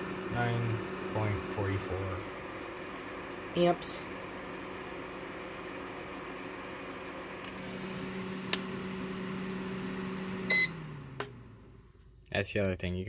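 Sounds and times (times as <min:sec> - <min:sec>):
fan heater motor hum: 0:00.0 - 0:13.0
short electronic beep: 0:10.5 - 0:10.8.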